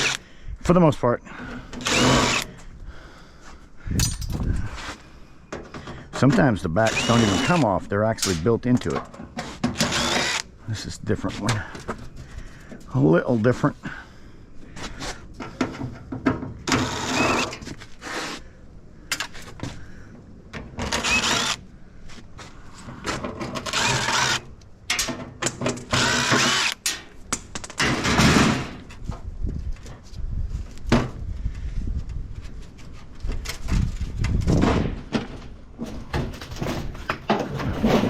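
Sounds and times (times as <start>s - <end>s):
cordless drill running: 0.0s - 0.2s, 1.8s - 2.5s, 6.8s - 7.7s, 9.8s - 10.5s, 16.7s - 17.6s, 20.9s - 21.6s, 23.6s - 24.5s, 25.9s - 26.8s.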